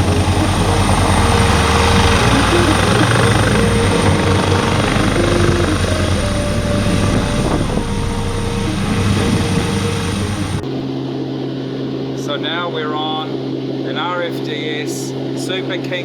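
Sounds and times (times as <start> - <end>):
helicopter rotor thudding: 0.0 - 10.6
steady engine drone: 0.0 - 10.9
high turbine whine: 0.0 - 11.0.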